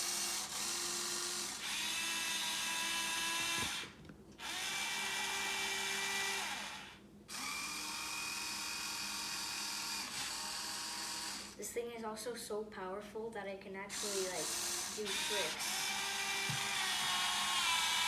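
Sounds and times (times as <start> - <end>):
electric gear motors whining: 0.0 - 11.6, 14.0 - 18.0.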